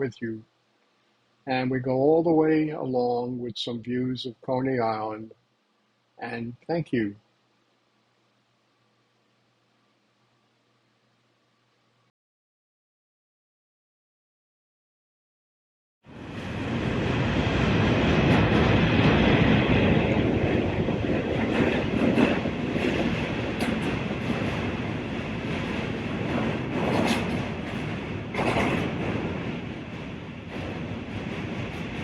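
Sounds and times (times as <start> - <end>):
train wheels rumbling on rails: 16.1 - 32.0
clicks from rail joints: 25.7 - 29.2.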